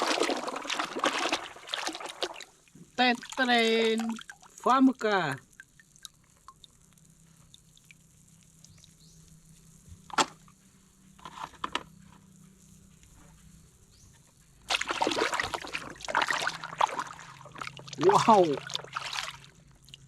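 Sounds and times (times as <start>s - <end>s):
water sloshing and splashing: 0.0s - 4.8s, 14.6s - 20.0s.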